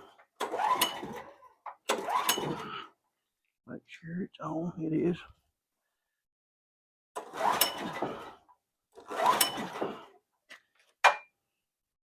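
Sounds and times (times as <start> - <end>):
generator engine cranking: 0.0 - 3.0, 7.2 - 10.2.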